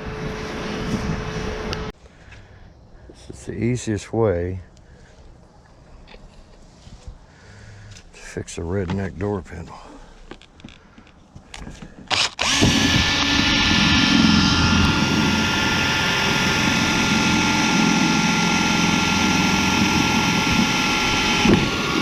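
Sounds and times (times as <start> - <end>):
electric drill motor running: 12.1 - 22.0.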